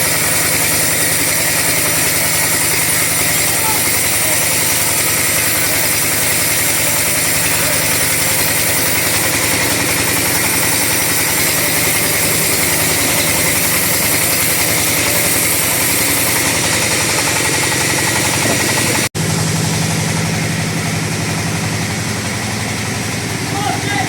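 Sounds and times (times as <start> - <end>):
chainsaw sawing wood: 0.0 - 19.1.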